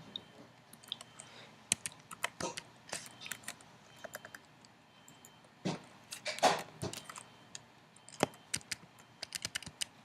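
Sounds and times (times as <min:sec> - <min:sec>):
keyboard keys clicking: 0:00.7 - 0:04.5, 0:06.9 - 0:09.9.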